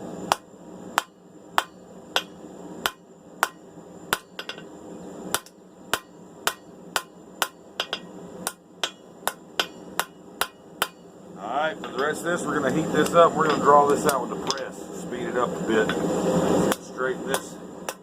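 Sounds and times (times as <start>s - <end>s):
steady low hum: 0.0s - 18.0s
hammer striking steel on anvil: 0.3s - 4.7s, 5.3s - 11.1s, 11.8s - 12.2s, 13.0s - 14.8s, 16.7s - 18.0s.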